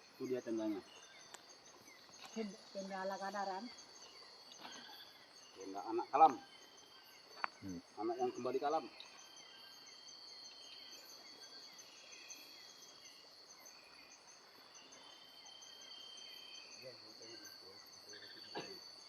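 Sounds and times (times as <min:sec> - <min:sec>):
night insects chirping: 0:00.0 - 0:19.0.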